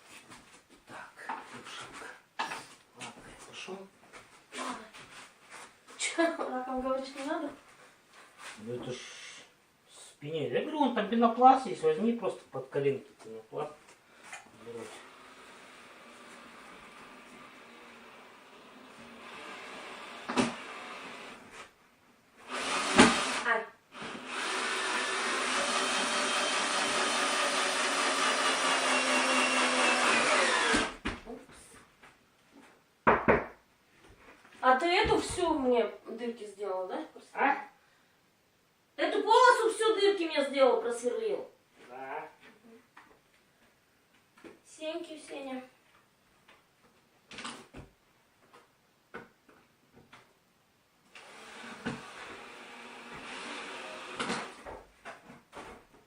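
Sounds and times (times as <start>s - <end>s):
cordless drill running: 15.0s - 21.4s, 22.4s - 31.0s, 51.1s - 54.6s.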